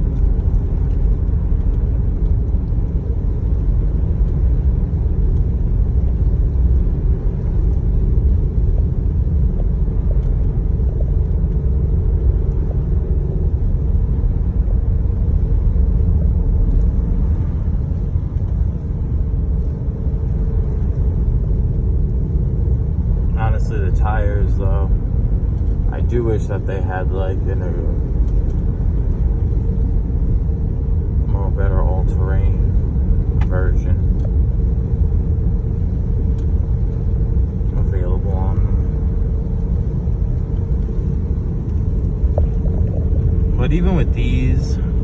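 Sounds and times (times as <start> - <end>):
faint steady hum: 0.0 - 45.0
low rumble of road noise: 0.0 - 45.0.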